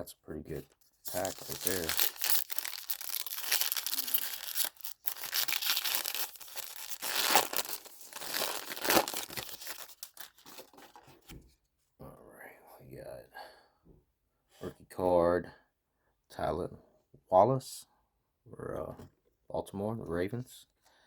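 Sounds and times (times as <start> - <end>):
wrapper tearing and crinkling: 1.1 - 11.0.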